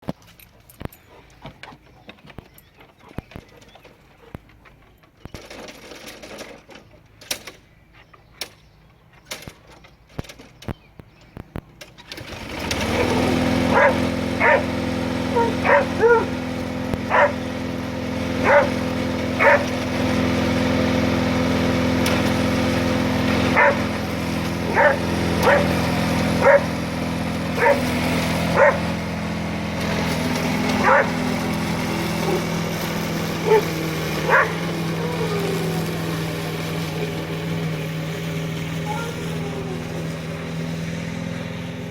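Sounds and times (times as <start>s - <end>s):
lawn mower engine running: 0.2s - 41.9s
dog barking: 13.7s - 14.7s, 15.3s - 16.4s, 17.1s - 17.4s, 18.4s - 18.8s, 19.4s - 19.7s, 23.6s - 23.8s, 24.7s - 25.7s, 26.4s - 26.7s, 27.6s - 27.8s, 28.6s - 28.8s, 30.8s - 31.1s, 33.4s - 33.7s, 34.3s - 35.4s.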